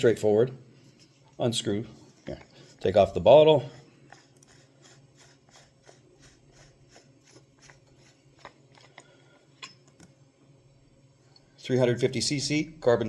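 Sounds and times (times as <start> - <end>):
soft rhythmic handling sounds: 0.6 - 10.2.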